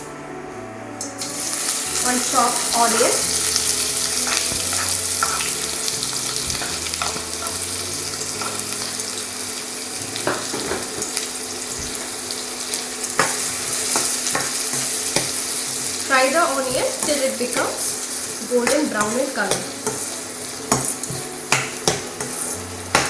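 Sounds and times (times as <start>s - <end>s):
onion sizzling in hot oil: 1.0s - 23.0s.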